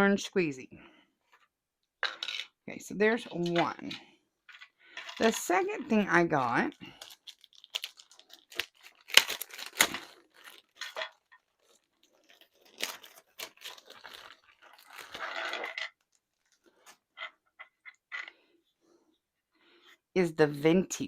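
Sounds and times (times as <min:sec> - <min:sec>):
packaging crinkling and rustling: 0:05.1 - 0:17.1.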